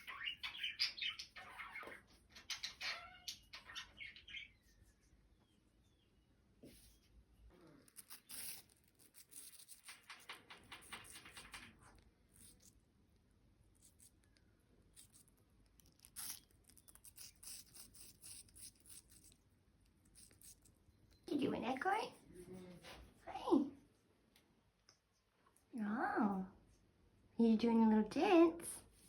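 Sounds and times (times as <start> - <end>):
bird beak crunching apple: 7.7 - 21.3.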